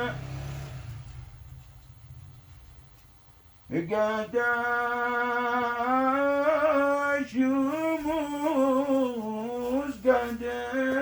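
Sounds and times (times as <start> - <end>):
man singing: 3.7 - 11.0.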